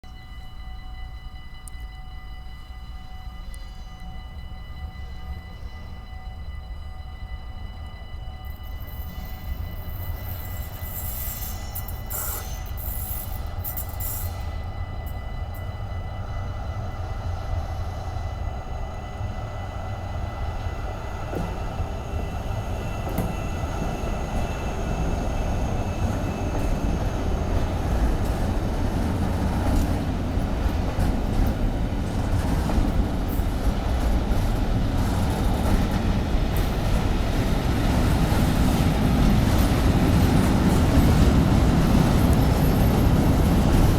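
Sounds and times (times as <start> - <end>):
freight train rolling past: 0.0 - 43.9
faint high whine: 0.1 - 29.1.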